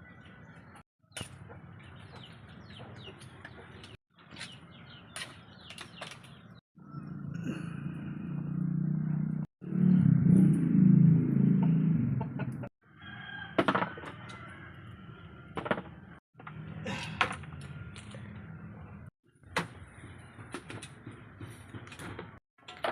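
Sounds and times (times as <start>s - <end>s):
small birds chirping: 0.0s - 7.4s.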